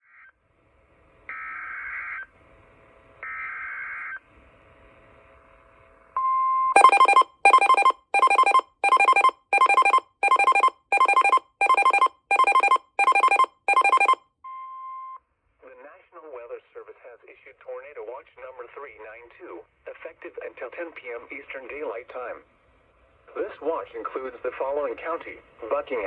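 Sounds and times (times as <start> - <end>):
loud beeping alert tone: 6.8 - 14.2.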